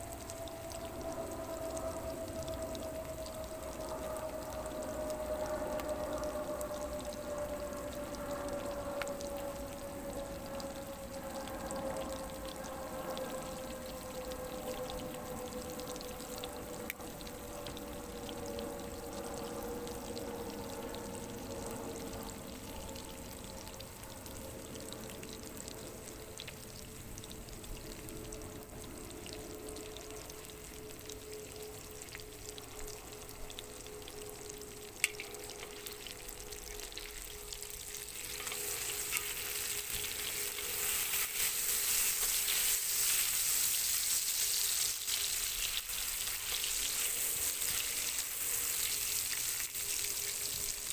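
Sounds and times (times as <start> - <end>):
food sizzling in a hot pan: 34.1 - 50.9.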